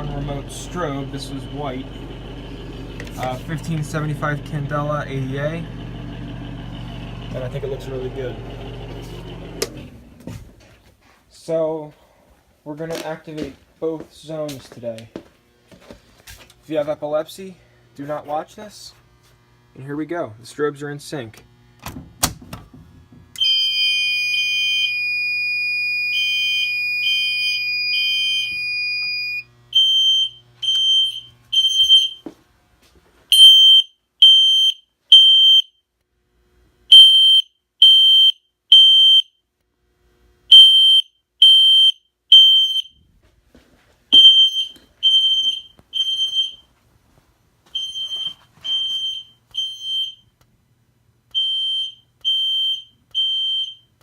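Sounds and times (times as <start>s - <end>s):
fire alarm horns beeping: 0.0s - 2.0s, 23.4s - 32.2s, 33.3s - 35.8s, 36.9s - 39.4s, 40.5s - 43.0s, 44.2s - 46.7s, 47.8s - 50.3s, 51.3s - 53.9s
steady alarm tone: 0.0s - 9.4s, 23.4s - 32.3s, 44.2s - 46.7s.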